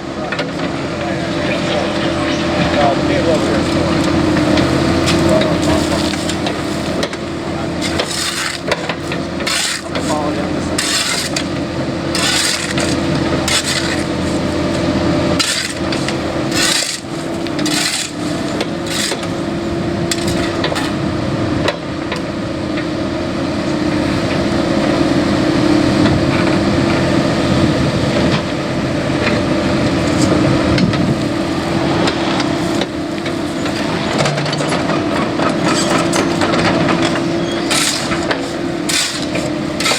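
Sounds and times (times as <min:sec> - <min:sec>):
excavator engine humming: 0:00.0 - 0:39.9
bucket scraping and knocking: 0:03.3 - 0:19.5, 0:30.1 - 0:39.9.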